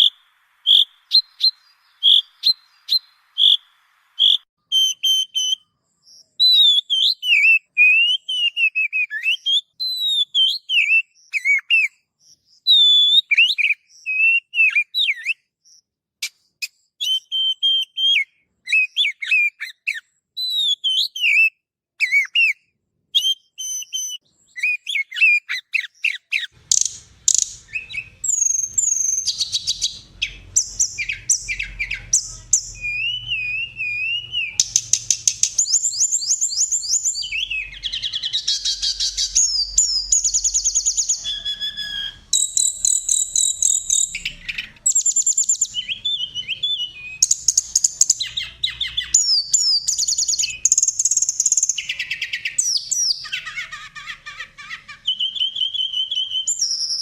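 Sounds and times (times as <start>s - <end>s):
overlapping bird chirping: 0.0s - 57.0s
songbird singing: 0.0s - 57.0s.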